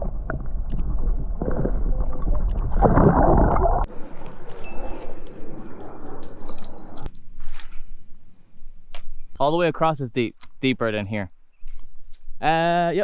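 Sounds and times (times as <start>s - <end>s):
water sloshing and gurgling: 0.0s - 8.4s.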